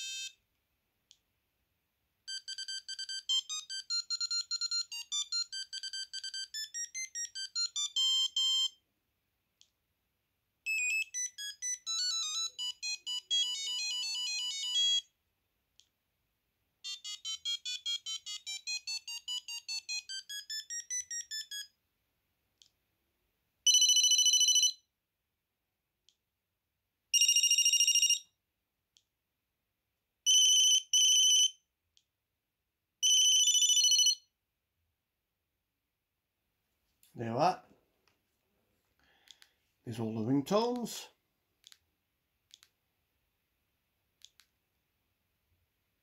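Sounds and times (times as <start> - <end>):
phone ringtone beeping melodies: 0.0 - 0.4, 2.3 - 8.8, 10.7 - 15.1, 16.8 - 21.8, 23.7 - 24.8, 27.2 - 28.2, 30.3 - 31.6, 33.0 - 34.2.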